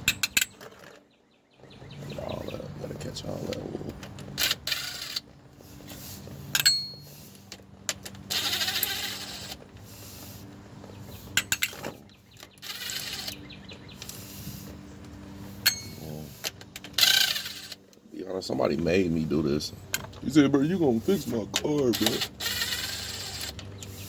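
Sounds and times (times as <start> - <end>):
ratchet wrench buzzing: 4.4 - 5.3, 8.0 - 9.6, 12.5 - 13.4, 15.6 - 17.8, 21.1 - 24.0.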